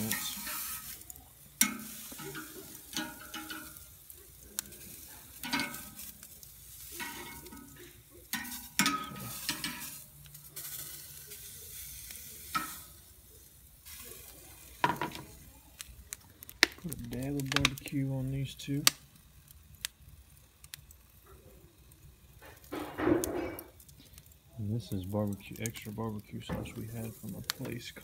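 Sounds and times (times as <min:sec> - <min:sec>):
utensil scraping grill grate: 0:00.0 - 0:16.2, 0:21.8 - 0:28.0
meat sizzling on a grill: 0:00.0 - 0:28.0.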